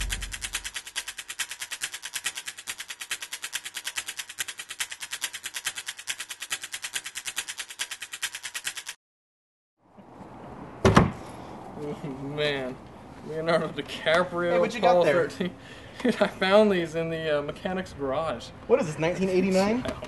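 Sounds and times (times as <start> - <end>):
rapid sharp clicks: 0.0 - 9.0.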